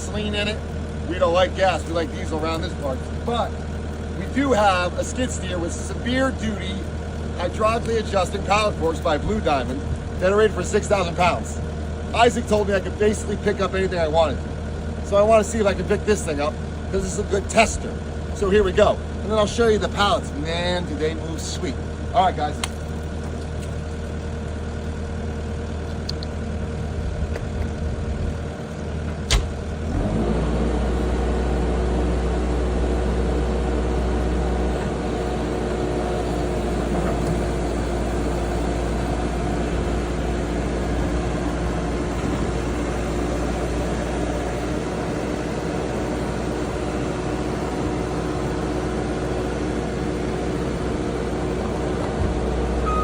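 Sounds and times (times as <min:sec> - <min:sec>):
diesel engine running: 0:00.0 - 0:53.0
sharp click: 0:29.3 - 0:29.6.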